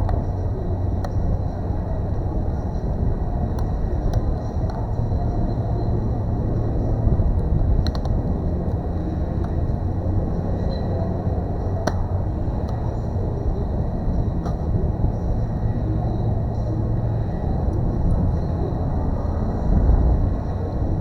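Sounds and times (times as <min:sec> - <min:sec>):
low rumble with hum: 0:00.0 - 0:21.0.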